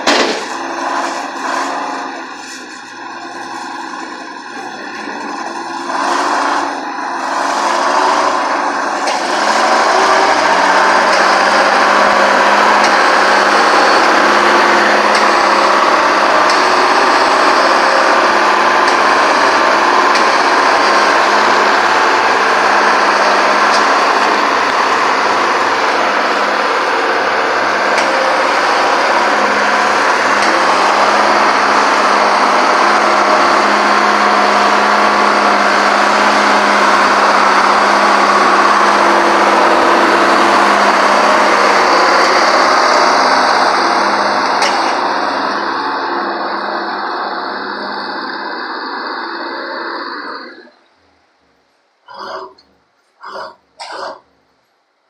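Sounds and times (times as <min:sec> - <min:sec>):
diesel engine rumbling: 0:00.0 - 0:55.0.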